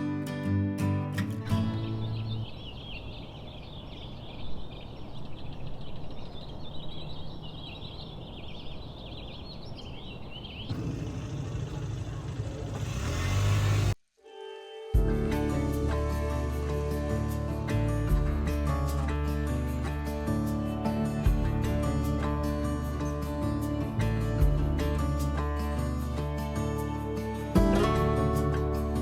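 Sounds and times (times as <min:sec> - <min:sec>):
small birds chirping: 0:01.5 - 0:14.0.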